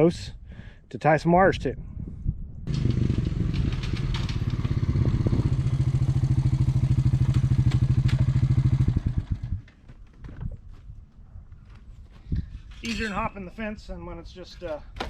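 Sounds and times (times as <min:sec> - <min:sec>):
small engine running: 0:02.7 - 0:09.6.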